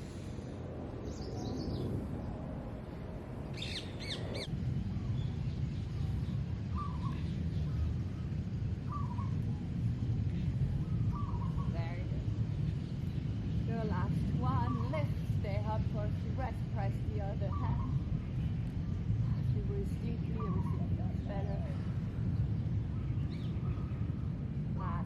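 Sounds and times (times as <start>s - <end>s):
low background rumble: 0.0s - 25.0s
birds calling: 3.5s - 4.5s, 5.9s - 9.4s, 10.3s - 15.3s.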